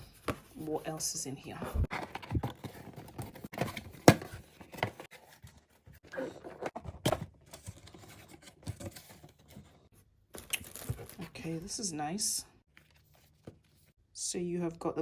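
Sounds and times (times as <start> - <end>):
cardboard rummaging scrapes and rustles: 0.0 - 9.9.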